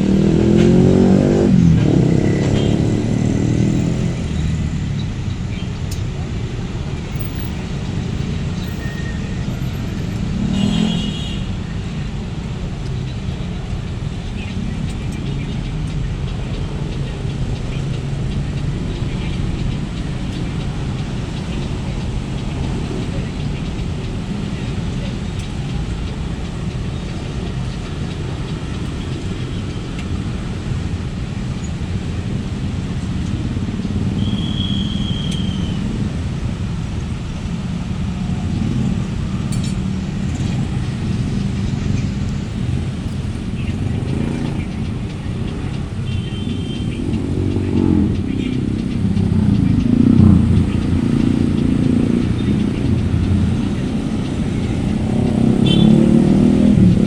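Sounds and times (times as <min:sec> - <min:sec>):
engine accelerating: 0:00.0 - 0:11.2, 0:35.0 - 0:57.0
traffic passing: 0:00.0 - 0:57.0.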